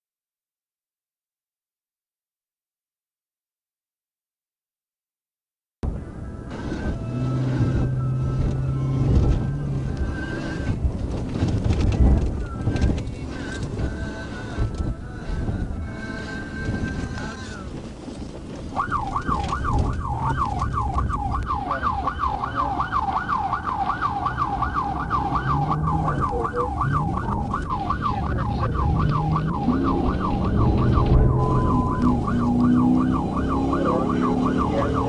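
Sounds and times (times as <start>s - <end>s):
car engine: 5.8s - 35.0s
road noise: 5.8s - 35.0s
police siren yelping: 18.7s - 35.0s.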